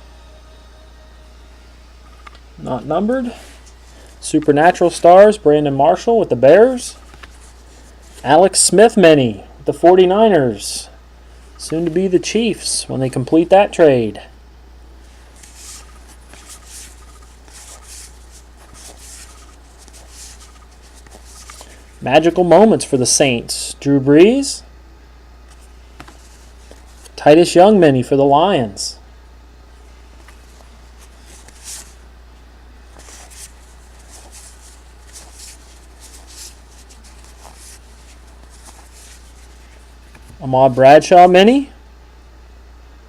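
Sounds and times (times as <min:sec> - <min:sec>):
steady low hum: 0:00.0 - 0:43.0
cards sliding off a stack: 0:07.0 - 0:08.2, 0:15.1 - 0:22.0, 0:25.5 - 0:27.2, 0:30.2 - 0:32.0, 0:32.9 - 0:40.4.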